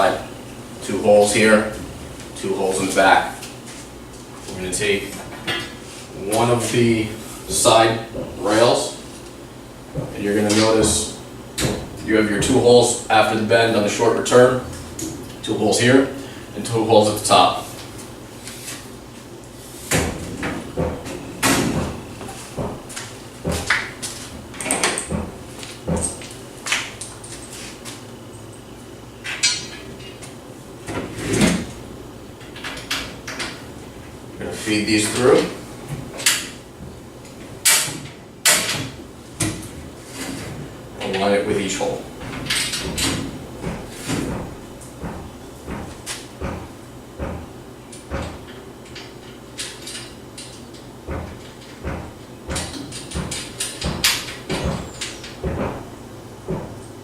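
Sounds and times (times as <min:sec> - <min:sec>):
metal parts knocking and clattering: 0:42.3 - 0:43.4.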